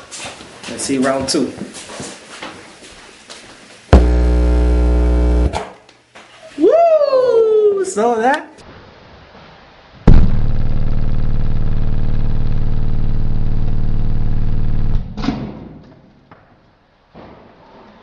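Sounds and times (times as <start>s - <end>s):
subwoofer loud low buzz: 3.9s - 5.6s, 10.1s - 15.2s
short crackle: 4.0s - 5.6s, 10.1s - 15.2s.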